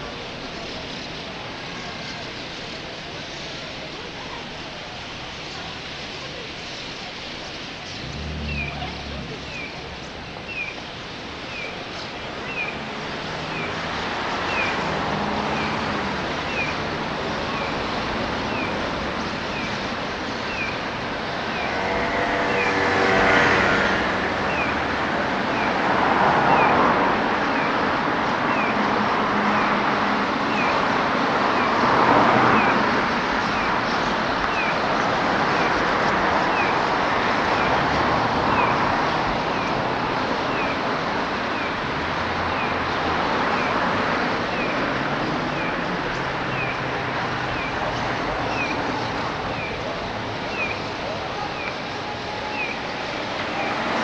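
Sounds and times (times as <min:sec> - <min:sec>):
cars passing: 0:05.5 - 0:54.0
engine tone rising: 0:08.0 - 0:10.2.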